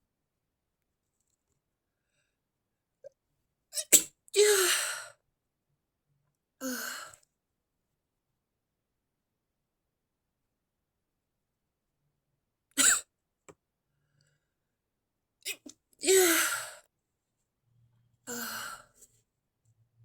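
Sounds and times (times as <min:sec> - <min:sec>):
person sneezing: 0:12.8 - 0:13.1.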